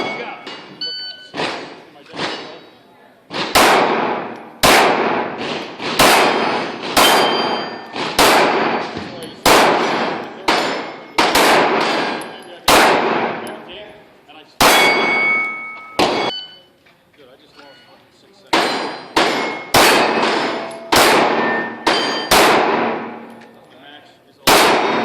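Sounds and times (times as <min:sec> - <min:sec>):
ring of steel target: 0:00.0 - 0:02.8, 0:06.0 - 0:13.6, 0:14.6 - 0:16.6, 0:18.5 - 0:23.4
pistol shots: 0:03.3 - 0:13.7, 0:14.6 - 0:16.3, 0:18.5 - 0:23.4, 0:24.4 - 0:25.0.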